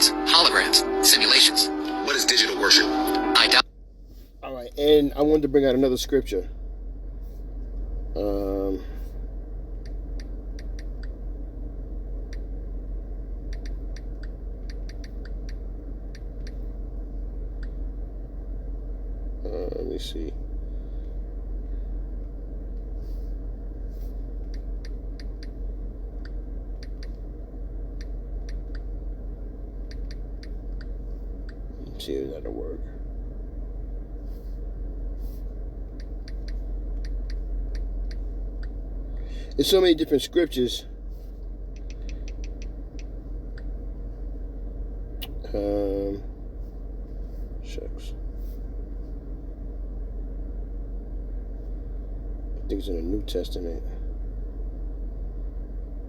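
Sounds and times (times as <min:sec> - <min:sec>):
steady low hum: 0:00.0 - 0:56.0
light sharp clicks: 0:41.7 - 0:43.7.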